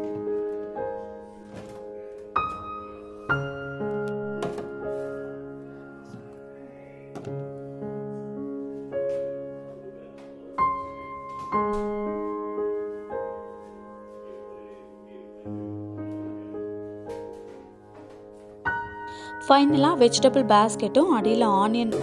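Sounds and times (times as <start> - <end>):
slow piano music: 0.0 - 22.0
sharp knocks: 4.4 - 4.8.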